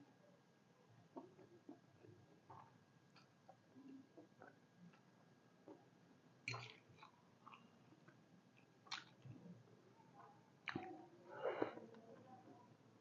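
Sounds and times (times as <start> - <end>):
person chewing food: 6.5 - 9.4
wet mouth sounds: 10.6 - 11.8.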